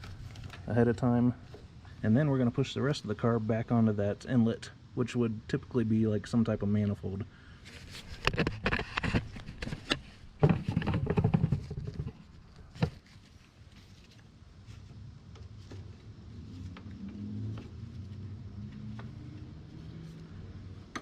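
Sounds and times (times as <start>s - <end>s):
plastic carburetor clicking and knocking: 8.3s - 13.0s.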